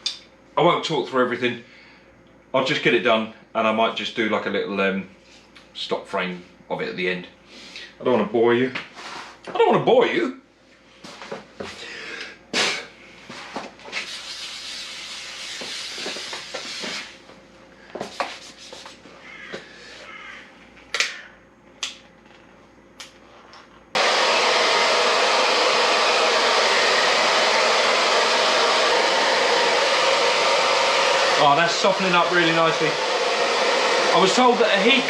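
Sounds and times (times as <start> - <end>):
heat gun blowing hiss: 14.0 - 17.2, 24.0 - 35.0.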